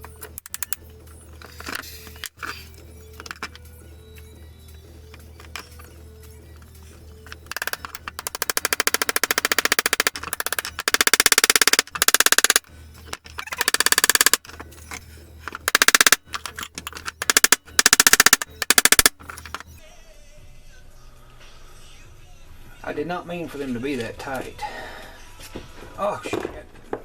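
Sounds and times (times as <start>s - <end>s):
rapid mechanical clicks: 0.0s - 0.8s, 7.3s - 19.8s.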